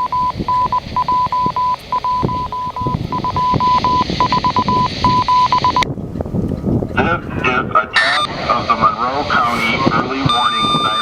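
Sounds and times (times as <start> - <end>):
steady-pitched beep pulses: 0.0 - 5.8, 9.4 - 11.0
radio hiss: 8.0 - 11.0.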